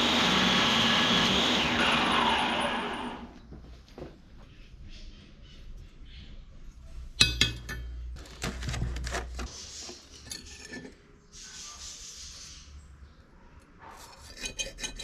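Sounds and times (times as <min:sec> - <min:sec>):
steel pieces clinking: 0:10.1 - 0:11.0.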